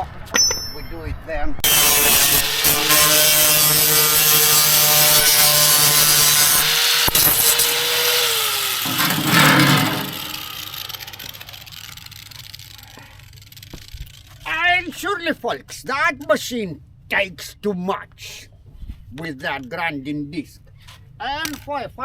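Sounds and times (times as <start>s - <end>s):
short scraping burst: 1.6s - 12.9s
angle grinder grinding metal: 1.6s - 14.3s.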